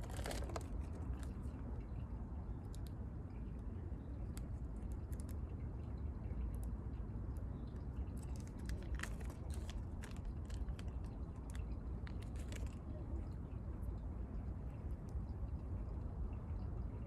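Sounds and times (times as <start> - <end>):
low outdoor rumble: 0.0 - 17.0.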